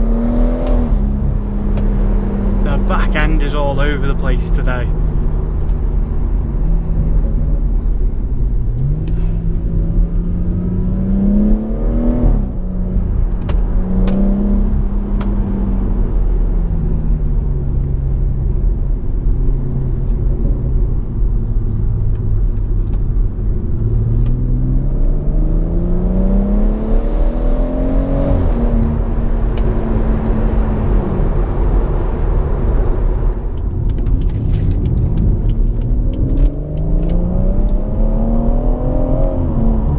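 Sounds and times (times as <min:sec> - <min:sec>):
car engine accelerating: 0:00.0 - 0:39.9
low road rumble: 0:00.0 - 0:39.9.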